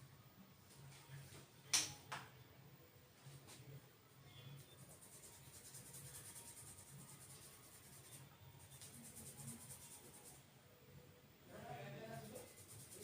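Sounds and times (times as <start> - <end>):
fingers scratching through hair: 4.9 - 10.4, 12.2 - 13.0.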